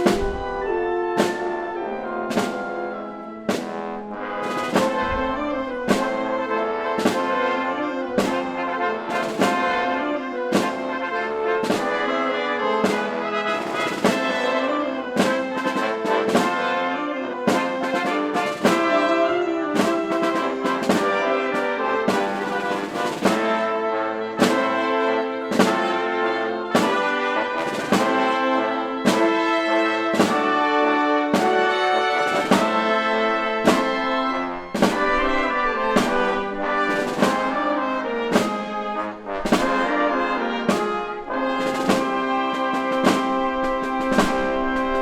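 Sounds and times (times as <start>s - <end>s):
percussion strokes: 0.0s - 9.8s, 19.7s - 23.8s, 31.3s - 45.0s
brass held chords: 0.0s - 45.0s.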